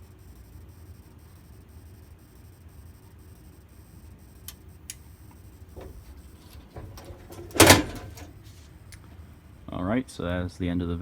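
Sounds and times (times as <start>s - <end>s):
faint clicks and handling knocks: 5.8s - 8.4s.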